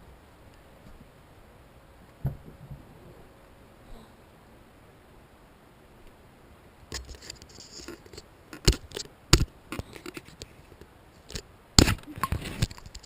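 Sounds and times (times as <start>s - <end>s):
scraping and rustling: 6.9s - 13.0s
sharp clicks and knocks: 6.9s - 13.0s.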